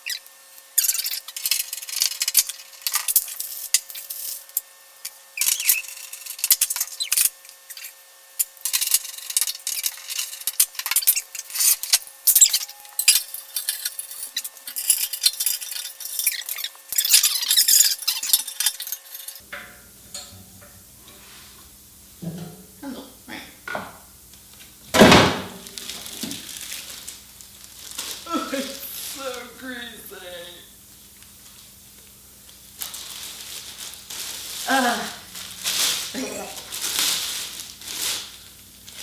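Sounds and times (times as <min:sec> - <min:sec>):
metal parts scraping and clinking: 0:00.8 - 0:19.4.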